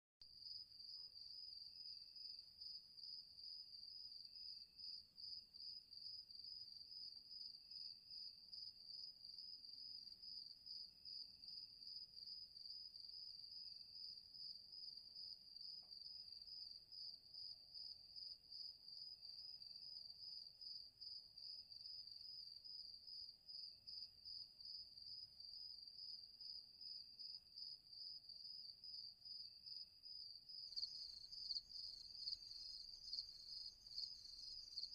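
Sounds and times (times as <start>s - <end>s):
crickets trilling: 30.8s - 34.9s.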